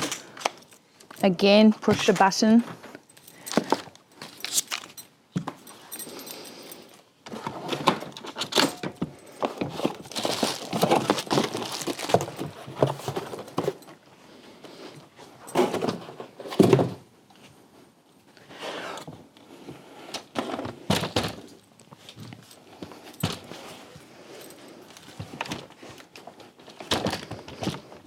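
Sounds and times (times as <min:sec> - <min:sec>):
plastic packaging rustling: 0:03.0 - 0:05.1, 0:07.8 - 0:14.0.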